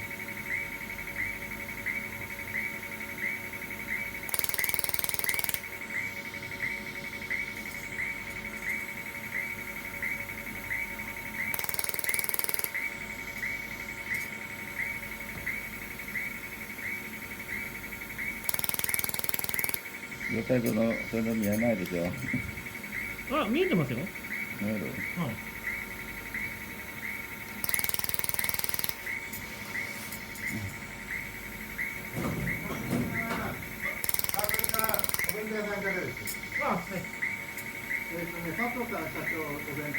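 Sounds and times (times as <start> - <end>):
machine hum: 0.0 - 39.9
laser welder ticking: 3.9 - 6.2, 11.3 - 13.0, 18.2 - 22.3, 27.1 - 29.4, 32.5 - 36.8.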